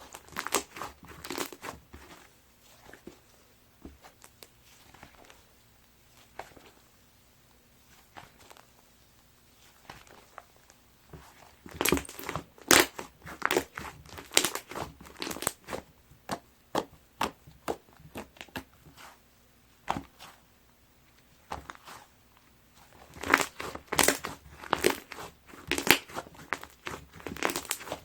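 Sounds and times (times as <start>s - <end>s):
crunchy slime crackling: 0.0s - 3.4s, 9.5s - 19.2s, 22.8s - 28.0s.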